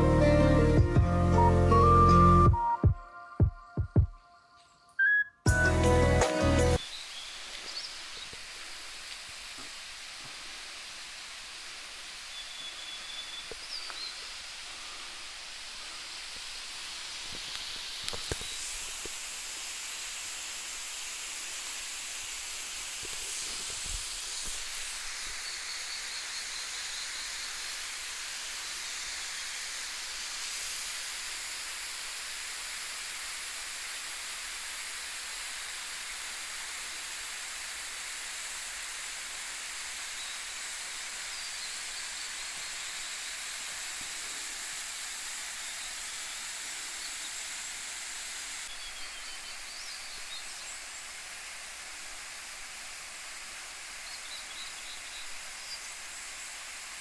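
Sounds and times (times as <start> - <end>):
waterfall rushing: 5.5 - 57.0.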